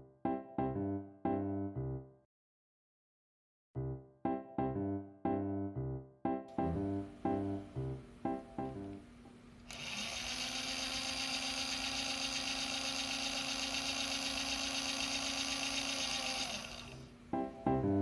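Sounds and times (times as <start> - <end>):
small electric motor whining: 9.7 - 17.2.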